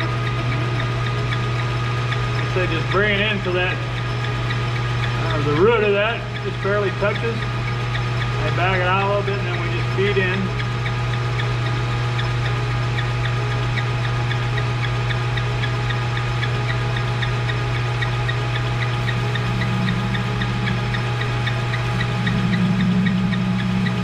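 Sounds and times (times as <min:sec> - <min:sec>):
light ticking: 0:00.0 - 0:24.0
metal lathe motor hum: 0:00.0 - 0:24.0
rough buzzy cutting tone: 0:17.9 - 0:24.0.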